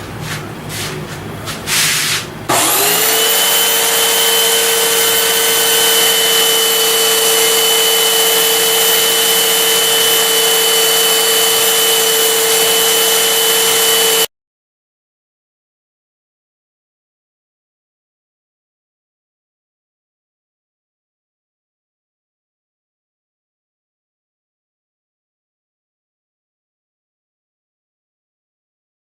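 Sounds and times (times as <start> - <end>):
rubbing noises: 0.0 - 2.4
electric machine motor whining: 2.5 - 14.3.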